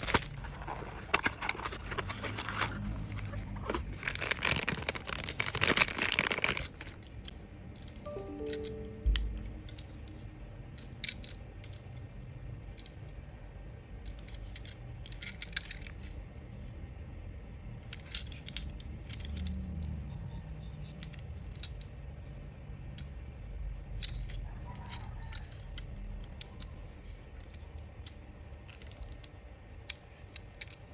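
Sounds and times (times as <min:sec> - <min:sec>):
small plastic and metal pieces clicking: 0:10.8 - 0:13.2, 0:14.0 - 0:16.2, 0:17.8 - 0:22.0, 0:24.0 - 0:30.9.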